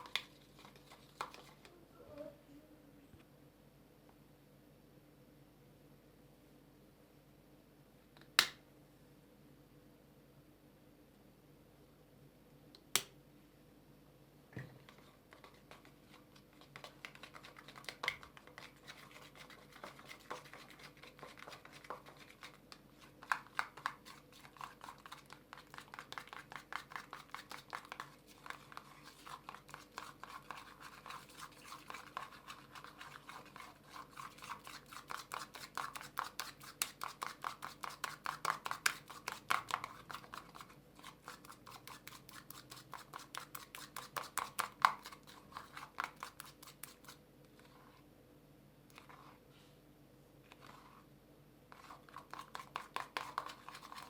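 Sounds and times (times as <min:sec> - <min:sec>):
utensil scraping in bowl: 0:14.8 - 0:48.1, 0:48.9 - 0:49.5, 0:50.5 - 0:51.1, 0:51.7 - 0:54.0.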